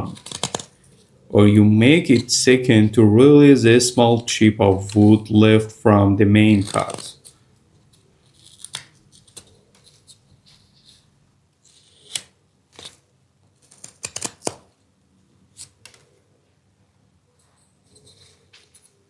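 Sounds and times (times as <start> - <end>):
knife slicing wood: 6.6 - 7.3.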